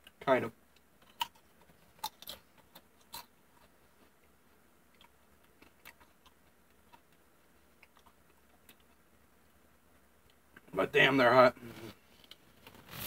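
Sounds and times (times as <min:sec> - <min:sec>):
person chewing potato chips: 0:01.0 - 0:03.8, 0:04.9 - 0:09.0.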